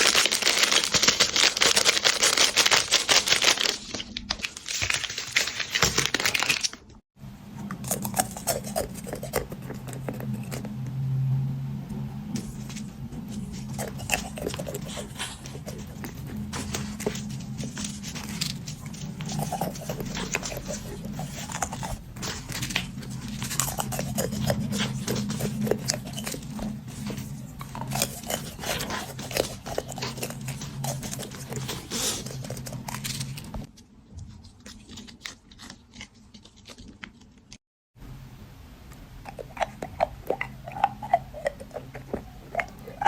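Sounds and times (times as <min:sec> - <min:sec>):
wet chewing and crunching: 0:00.0 - 0:07.0, 0:07.6 - 0:11.0, 0:12.3 - 0:37.6, 0:38.9 - 0:43.0
steady low hum: 0:07.2 - 0:34.4.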